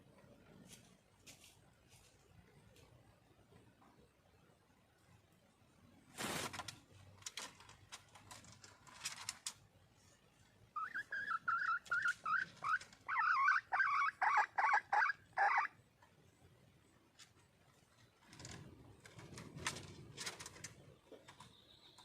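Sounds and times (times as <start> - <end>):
hen clucking: 10.6 - 15.8.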